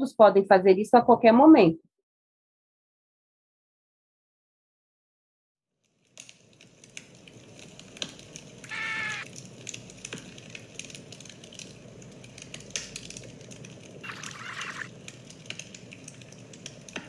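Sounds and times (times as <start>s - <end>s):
campfire crackling and popping: 5.8s - 17.0s
short high-pitched call: 8.7s - 9.2s.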